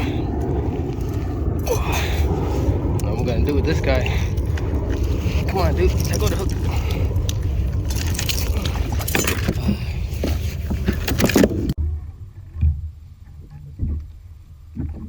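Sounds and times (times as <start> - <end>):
low wind rumble: 0.0 - 15.0
clicking rattling handling noise: 5.9 - 11.8.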